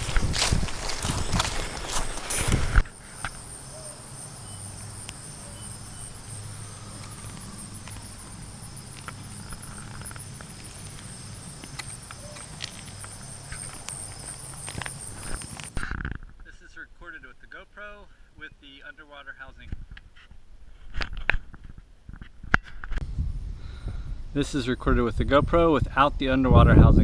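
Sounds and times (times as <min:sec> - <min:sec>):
insect chirring: 0:00.0 - 0:15.8.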